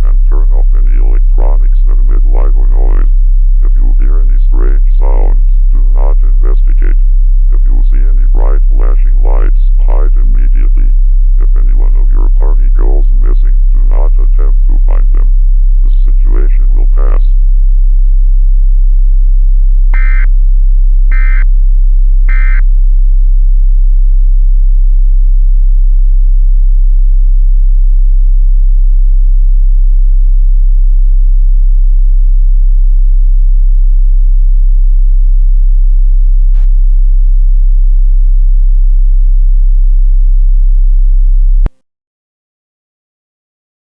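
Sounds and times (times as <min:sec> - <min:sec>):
spoken alert message: 0:00.0 - 0:17.4, 0:20.0 - 0:20.3, 0:21.1 - 0:21.4, 0:22.3 - 0:22.6
loud steady low hum: 0:00.0 - 0:41.8
short digital data bursts: 0:20.0 - 0:20.3, 0:21.1 - 0:21.4, 0:22.3 - 0:22.6.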